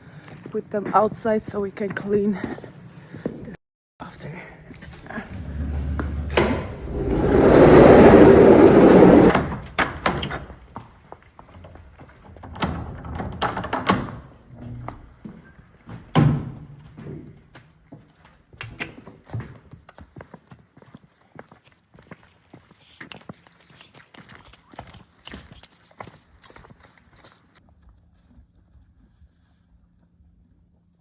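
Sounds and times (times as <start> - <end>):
sliding door scraping open: 4.8 - 10.3.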